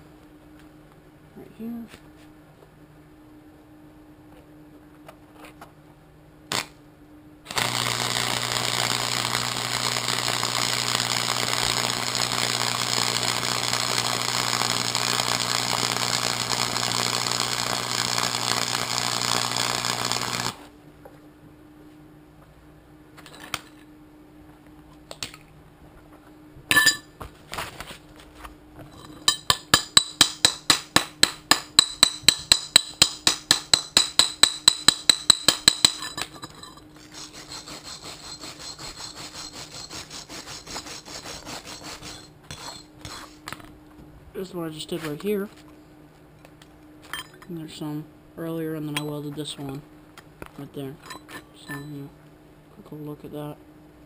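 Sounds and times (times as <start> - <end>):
low electrical hum: 0.0 - 54.0
welding arc crackling sizzle: 6.5 - 6.8, 7.5 - 20.7, 37.0 - 43.4
sharp metal strokes: 29.0 - 43.4.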